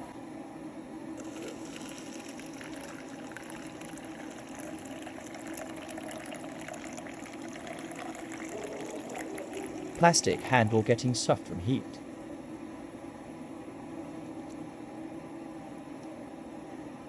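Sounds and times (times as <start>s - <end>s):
water bubbling and crackling: 1.2s - 10.9s.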